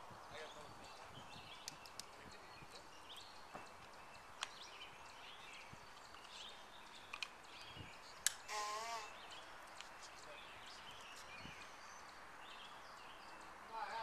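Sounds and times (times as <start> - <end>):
small sharp clicks: 1.6 - 2.1.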